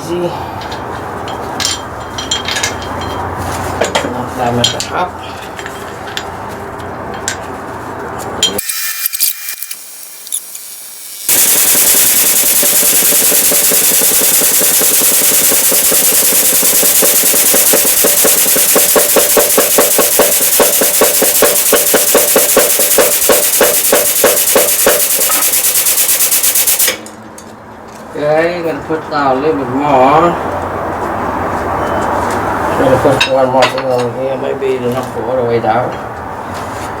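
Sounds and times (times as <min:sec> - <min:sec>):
pneumatic impact gun hammering: 0:08.6 - 0:27.1.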